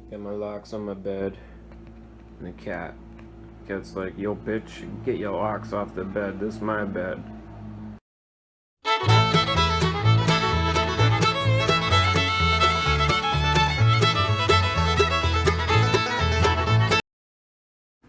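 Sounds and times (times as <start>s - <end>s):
fiddle: 8.8s - 17.0s
bouncing bass line: 9.0s - 17.0s
steady beat: 9.0s - 17.0s.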